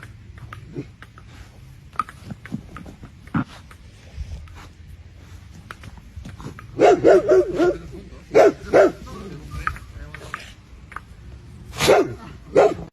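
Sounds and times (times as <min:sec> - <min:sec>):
dog barking excitedly: 0:06.7 - 0:09.0, 0:11.8 - 0:12.9.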